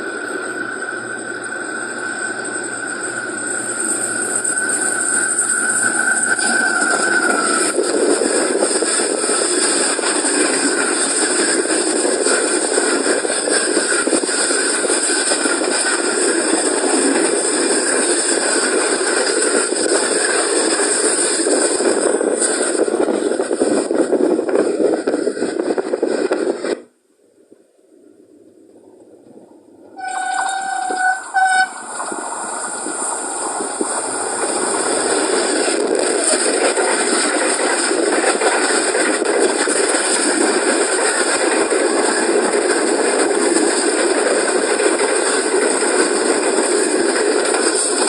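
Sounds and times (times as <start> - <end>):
passing train rushing: 0.0 - 26.9, 29.2 - 48.0
locomotive horn blasts: 30.0 - 31.8.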